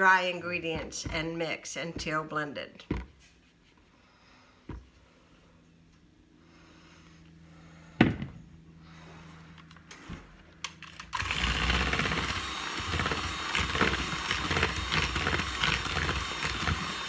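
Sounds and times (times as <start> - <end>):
electric mixer running: 10.8 - 17.0.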